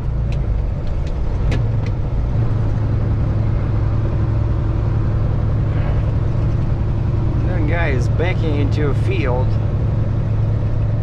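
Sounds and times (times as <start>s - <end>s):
truck diesel engine droning: 0.0s - 11.0s.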